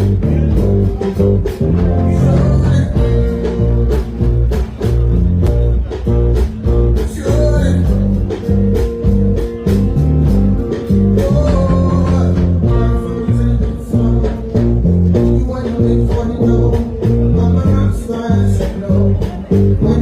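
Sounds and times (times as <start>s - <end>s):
drums: 0.0s - 20.0s
electric guitar: 0.0s - 20.0s
pulsing bass line: 0.0s - 20.0s
faint singing voice: 11.1s - 20.0s.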